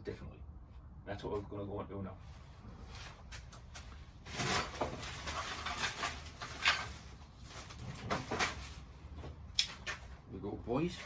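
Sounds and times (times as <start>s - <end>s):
rustling and handling noise: 2.2s - 11.0s.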